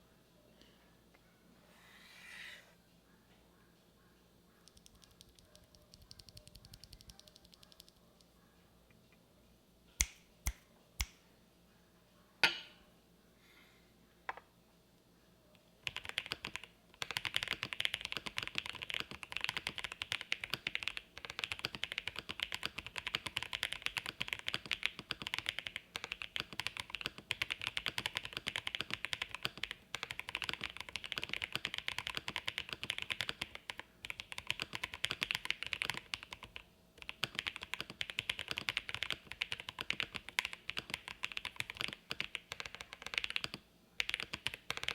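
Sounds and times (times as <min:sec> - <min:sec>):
typing on mechanical keyboard: 0:04.7 - 0:08.0, 0:15.8 - 0:44.9.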